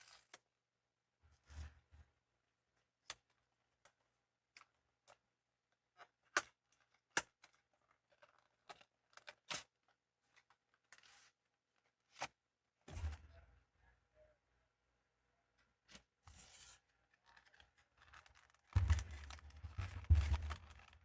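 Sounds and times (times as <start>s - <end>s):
packaging rustling: 17.3s - 21.0s.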